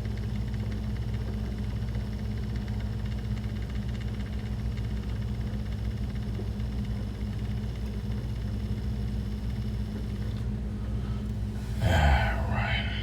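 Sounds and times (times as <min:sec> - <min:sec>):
low machine hum: 0:06.3 - 0:13.0.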